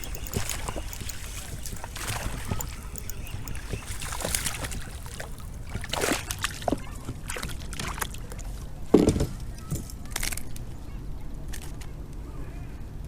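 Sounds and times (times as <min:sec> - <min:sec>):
water splashing against kayak: 0:00.0 - 0:08.2.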